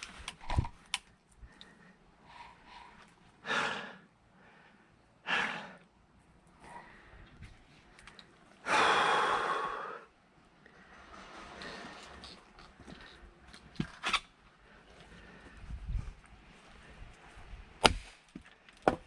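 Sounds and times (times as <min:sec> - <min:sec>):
person breathing hard: 0:01.4 - 0:05.9, 0:06.6 - 0:13.3, 0:14.6 - 0:17.1.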